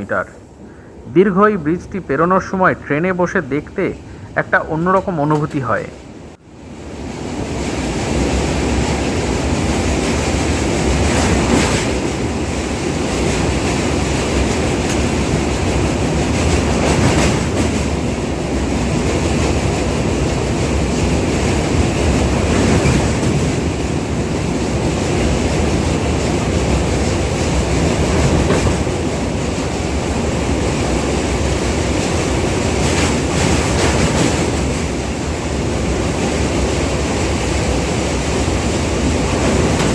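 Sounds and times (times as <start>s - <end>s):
train wheels rumbling on rail: 0.0s - 39.9s
train wheel clacks: 8.1s - 39.9s.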